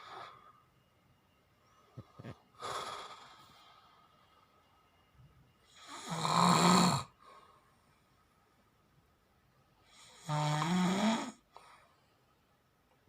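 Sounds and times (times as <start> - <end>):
person snoring: 5.7 - 7.1, 10.0 - 11.4
breathy breath: 7.2 - 7.8.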